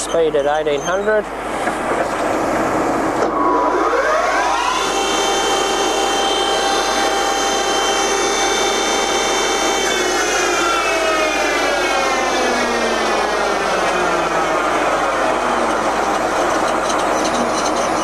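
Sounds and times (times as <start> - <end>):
lathe headstock whine: 0.8 - 18.0
gear noise: 14.6 - 18.0.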